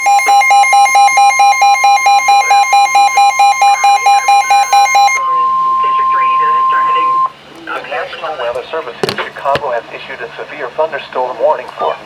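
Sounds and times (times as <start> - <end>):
loud beeping alarm: 0.0 - 7.4
steady warning alarm tone: 0.0 - 7.4.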